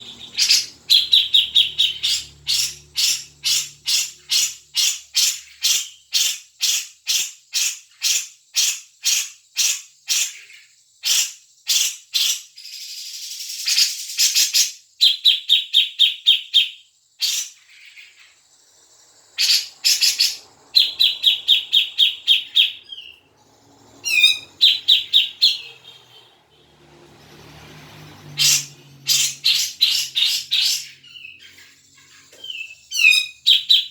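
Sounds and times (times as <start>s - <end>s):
bird chattering trills: 0.0s - 10.5s, 19.3s - 26.6s, 28.3s - 33.9s
bird ringing calls: 0.0s - 11.3s, 19.2s - 26.7s, 28.2s - 33.9s
bird harsh rasping call: 0.0s - 12.3s, 19.3s - 26.9s, 28.2s - 33.9s.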